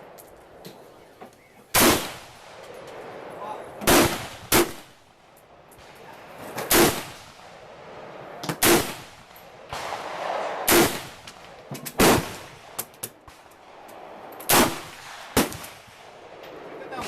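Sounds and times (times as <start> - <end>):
loud gunshots with echo: 1.7 - 5.1, 6.6 - 11.4, 12.0 - 12.8, 14.5 - 17.0
distant gunshots: 1.7 - 5.2, 5.8 - 17.0.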